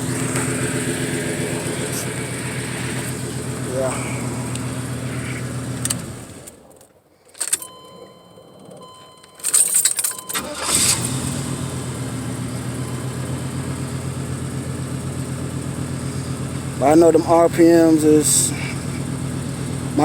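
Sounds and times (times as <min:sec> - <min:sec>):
car engine idling: 0:00.0 - 0:06.8, 0:07.8 - 0:20.0
engine cranking and restarting: 0:00.0 - 0:07.9, 0:08.7 - 0:20.0
electronic warning tone: 0:07.6 - 0:09.5.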